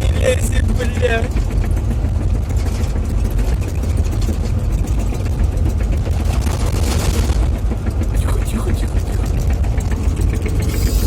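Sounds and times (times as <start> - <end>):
diesel engine rumbling: 0.0 - 11.0.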